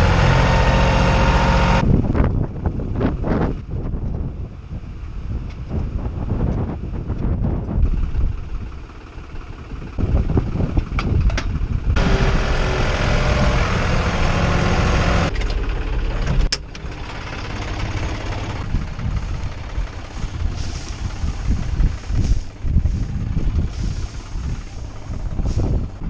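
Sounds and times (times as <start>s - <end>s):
harsh machinery noise: 0.0s - 1.8s, 12.0s - 26.0s
tractor engine running: 0.0s - 4.5s, 5.4s - 26.0s.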